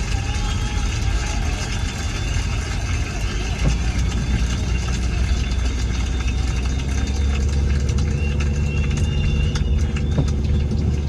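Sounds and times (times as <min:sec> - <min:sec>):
car engine humming: 0:00.0 - 0:11.0.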